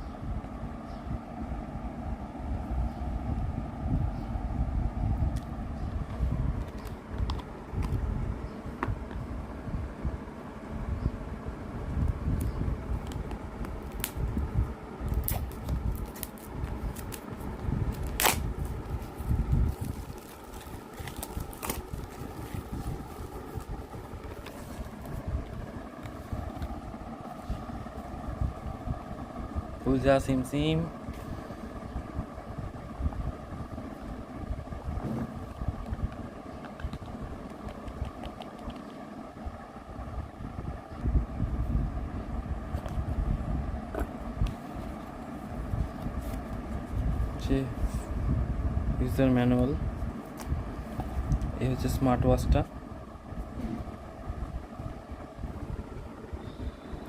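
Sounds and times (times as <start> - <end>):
low rumbling handling noise: 0.0 - 56.4
packaging crackling: 13.0 - 14.2, 15.1 - 25.0.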